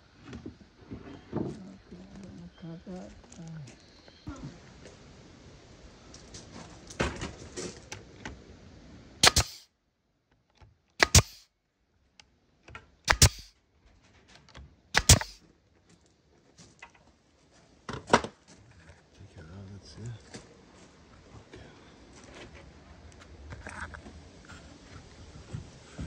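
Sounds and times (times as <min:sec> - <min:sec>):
nails hammered into wood: 0:09.2 - 0:09.6, 0:11.0 - 0:11.4, 0:13.1 - 0:13.5, 0:15.0 - 0:15.4.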